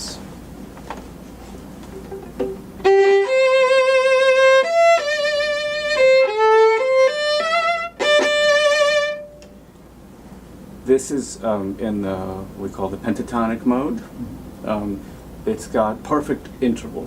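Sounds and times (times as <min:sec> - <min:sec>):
solo violin melody: 0:02.8 - 0:09.5.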